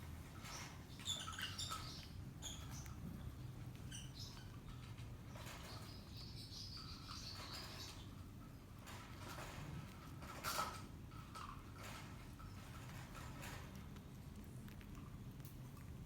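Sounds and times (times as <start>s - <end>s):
parrot chicks squeaking: 0.3s - 9.6s.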